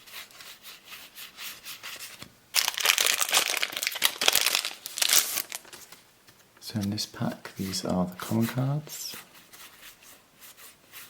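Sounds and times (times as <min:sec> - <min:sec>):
cards rustling: 0:01.8 - 0:10.2
pack wrapper crinkling and tearing: 0:02.5 - 0:06.0.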